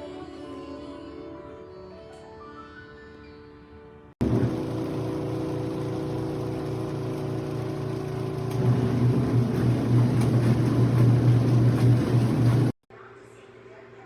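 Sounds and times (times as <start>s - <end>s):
washing machine motor humming: 4.2s - 12.8s.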